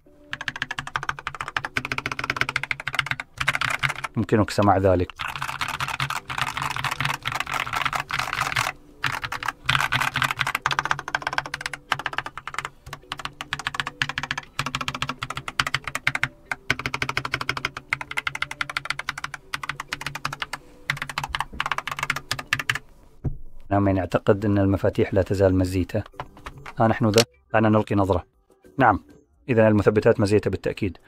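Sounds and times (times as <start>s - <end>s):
mechanical keyboard typing: 0.3s - 22.8s.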